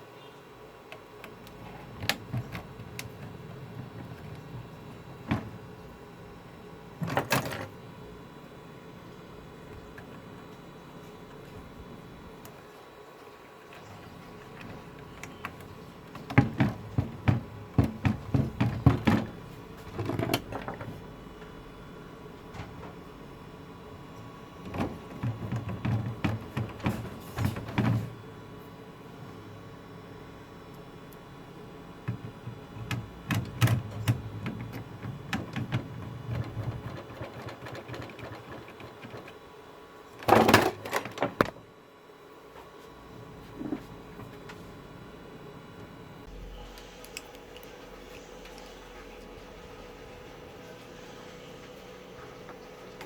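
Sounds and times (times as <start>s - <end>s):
hard parts knocking on a workbench: 5.2s - 5.6s, 16.2s - 21.0s, 24.6s - 28.1s.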